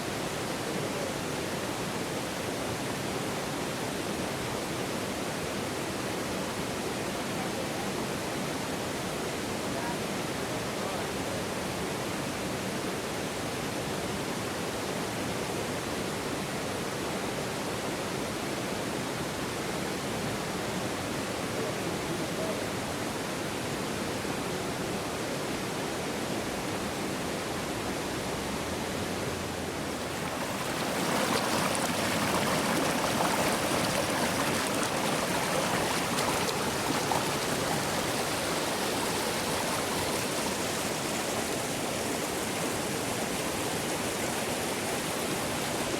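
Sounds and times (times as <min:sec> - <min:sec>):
river flowing: 0:22.7 - 0:45.9.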